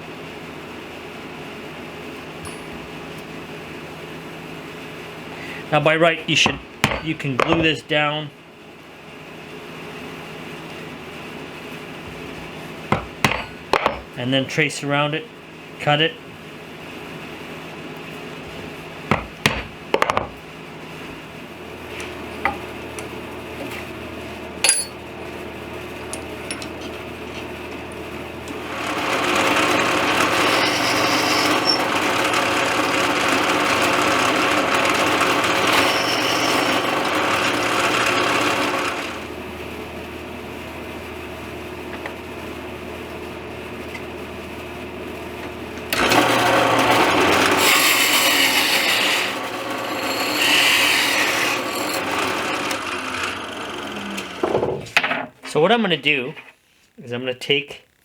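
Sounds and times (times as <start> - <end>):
power tool cutting wood: 28.5 - 39.3, 45.9 - 54.6.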